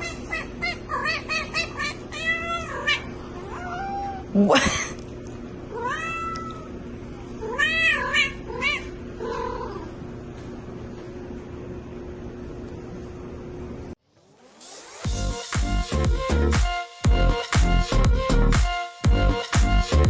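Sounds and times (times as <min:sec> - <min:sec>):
cat meowing: 0:00.0 - 0:04.3, 0:05.7 - 0:06.8, 0:07.4 - 0:10.0.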